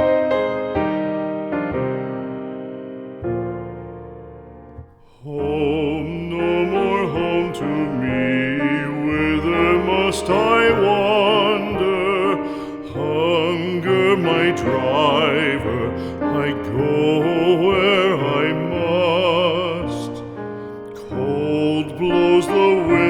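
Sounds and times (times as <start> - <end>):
piano accompaniment: 0.0 - 23.0
piano chord: 0.0 - 23.0
person singing with vibrato: 5.0 - 23.0.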